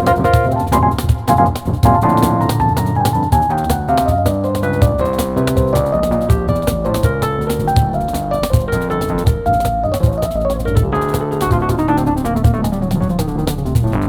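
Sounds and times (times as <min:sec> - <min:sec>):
hand drum and kit percussion: 0:00.0 - 0:14.0
piano melody: 0:00.0 - 0:14.0.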